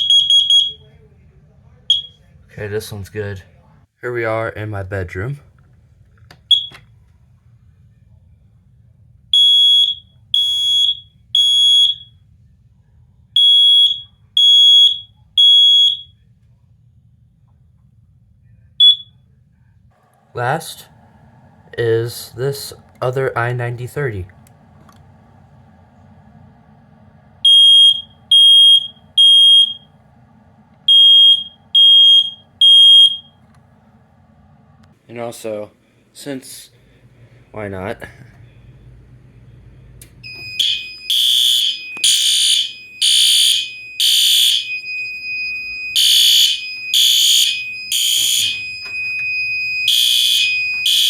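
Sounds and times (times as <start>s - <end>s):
smoke alarm beeps: 0.0s - 1.0s, 1.9s - 2.3s, 6.5s - 6.8s, 9.3s - 12.2s, 13.4s - 16.2s, 18.8s - 19.2s, 27.4s - 29.9s, 30.8s - 33.4s, 40.2s - 51.0s.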